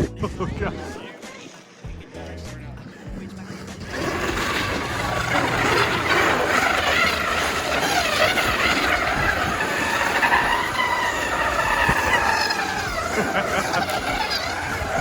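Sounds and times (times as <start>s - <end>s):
electric toy truck motor whining: 3.1s - 15.0s.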